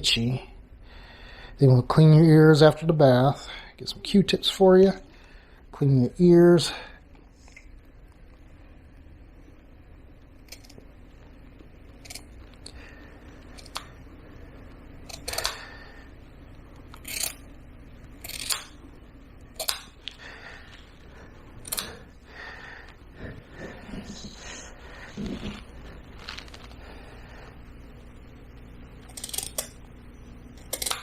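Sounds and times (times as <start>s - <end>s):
scissors snipping hair: 10.5s - 10.8s, 13.6s - 13.9s, 16.9s - 17.4s, 18.2s - 18.8s, 21.6s - 21.9s, 29.0s - 29.8s, 30.6s - 31.0s.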